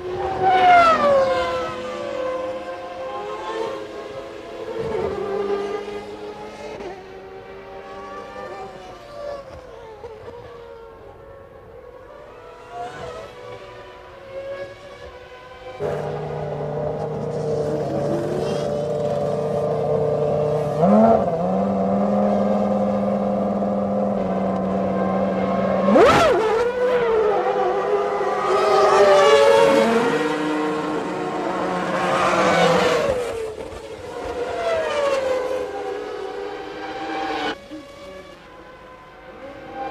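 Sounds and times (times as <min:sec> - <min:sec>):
racing car engines revving: 0:12.1 - 0:39.9
racing car passing close: 0:15.6 - 0:39.9.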